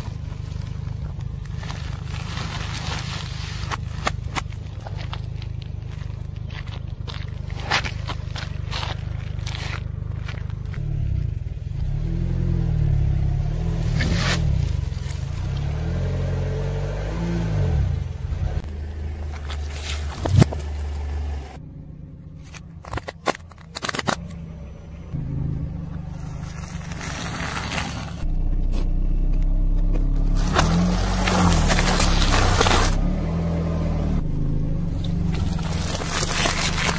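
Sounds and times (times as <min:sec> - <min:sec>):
tyre crushing objects: 0:00.0 - 0:10.9, 0:19.2 - 0:21.0, 0:29.8 - 0:33.1, 0:35.1 - 0:36.9
car engine running slowly: 0:00.0 - 0:36.9.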